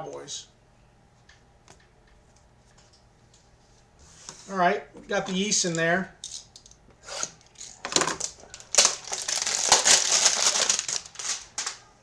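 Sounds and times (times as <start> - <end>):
packaging torn and crumpled: 7.9 - 11.8.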